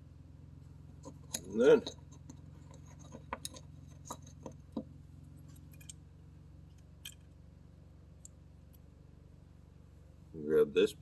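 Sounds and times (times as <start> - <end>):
low steady hum: 0.0 - 11.0
small metal parts clicking: 5.6 - 6.0.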